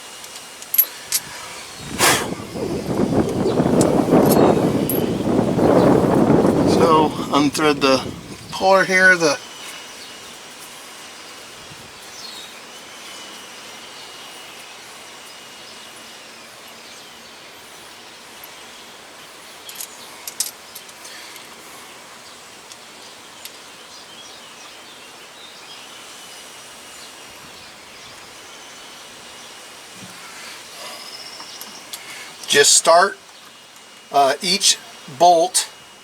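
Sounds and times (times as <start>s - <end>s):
outdoor background noise: 0.0s - 36.0s.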